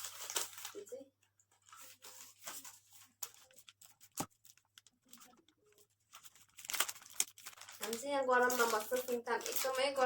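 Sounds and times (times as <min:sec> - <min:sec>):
packaging rustling and crinkling: 0:00.0 - 0:10.0.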